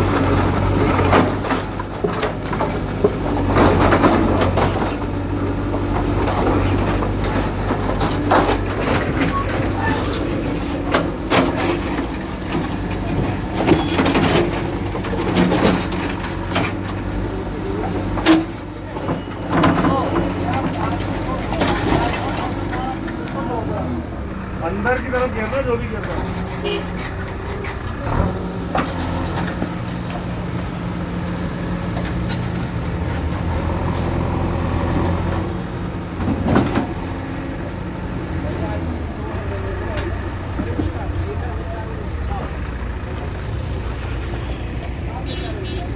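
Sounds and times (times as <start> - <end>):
breaking masonry clatter: 0.0 - 23.9
bulldozer diesel engine running: 0.0 - 45.9
masonry breaking and rubble falling: 18.0 - 23.9.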